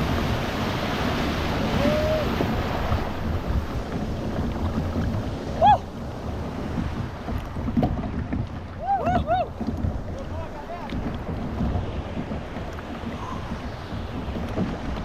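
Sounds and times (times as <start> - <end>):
surf breaking around a boat: 0.0 - 15.0
wind buffeting the microphone: 0.0 - 15.0.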